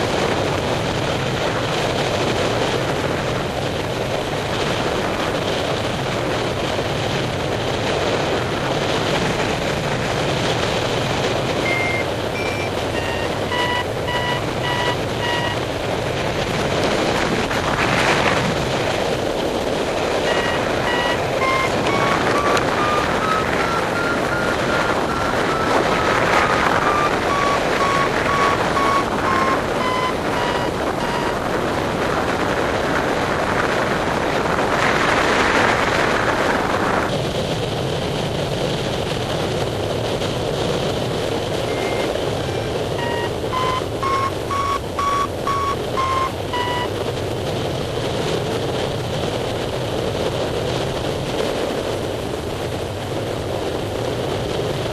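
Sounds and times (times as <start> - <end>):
wind rushing on microphone: 0.0 - 54.9
variometer beeping: 11.5 - 15.8, 20.2 - 31.7, 41.5 - 47.1.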